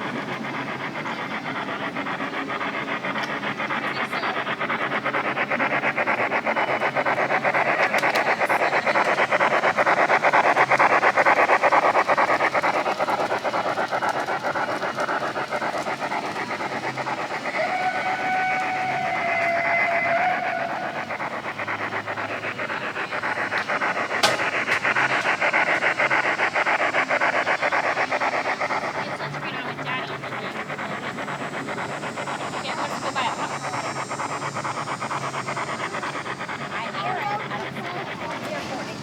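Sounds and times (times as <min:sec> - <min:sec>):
model train chuffing: 0:00.0 - 0:39.0
train whistle: 0:17.2 - 0:21.4.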